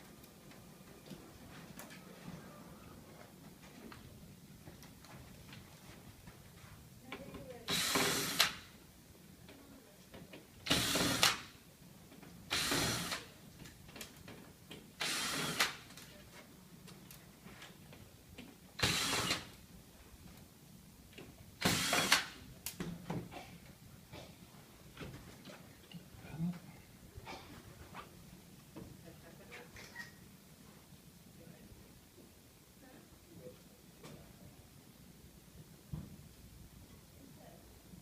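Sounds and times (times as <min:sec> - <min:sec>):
power screwdriver running: 0:07.7 - 0:08.6, 0:10.7 - 0:11.4, 0:12.5 - 0:13.3, 0:15.0 - 0:15.8, 0:18.8 - 0:19.5, 0:21.6 - 0:22.3.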